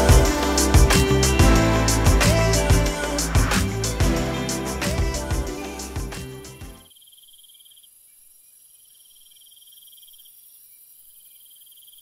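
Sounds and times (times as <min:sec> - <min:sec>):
background music: 0:00.0 - 0:06.8
high insect hiss: 0:00.0 - 0:12.0
cricket trilling: 0:06.9 - 0:12.0.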